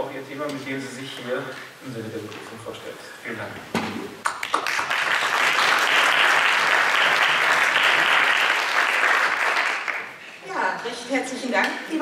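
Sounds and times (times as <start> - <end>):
audience applauding: 4.2 - 10.2.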